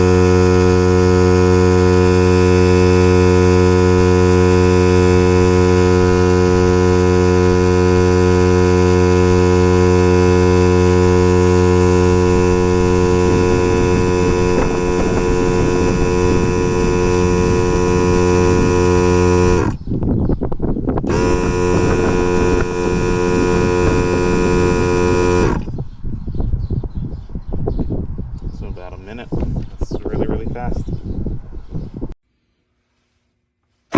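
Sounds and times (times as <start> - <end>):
air compressor humming: 0.0 - 19.8, 21.0 - 25.8.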